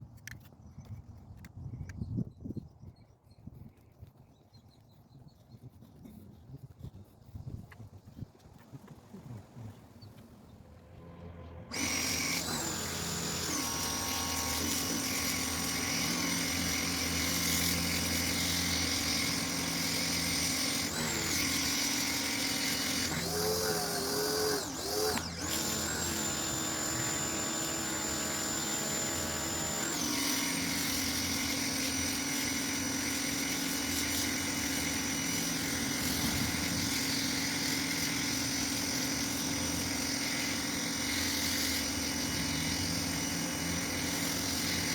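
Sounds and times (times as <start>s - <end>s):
pressure washer motor whine: 10.4s - 44.9s.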